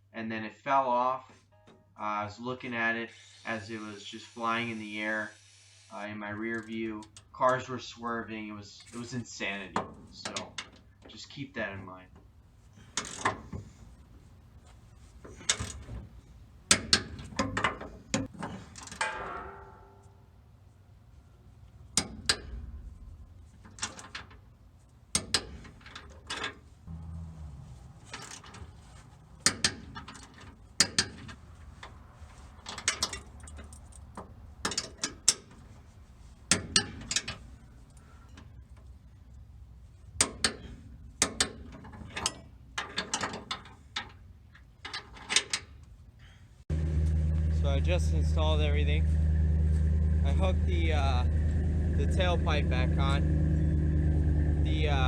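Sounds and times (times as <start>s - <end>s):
hand tools clicking and clanking: 8.8s - 11.4s, 12.2s - 20.2s, 21.9s - 39.2s, 40.0s - 46.3s.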